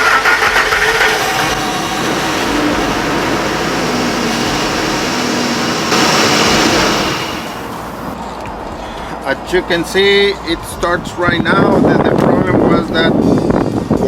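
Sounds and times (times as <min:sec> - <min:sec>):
truck engine starting and running: 0:00.0 - 0:11.2.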